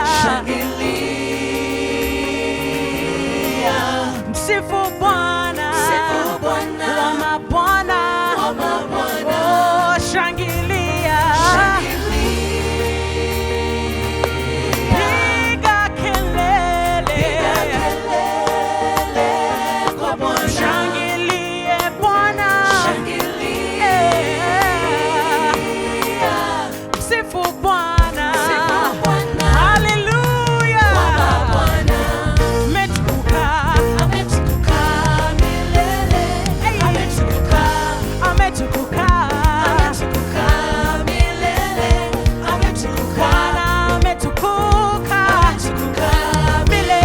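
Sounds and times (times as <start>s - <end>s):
voices singing gospel: 0.0s - 47.0s
band with bass line: 10.0s - 19.8s, 28.0s - 47.0s.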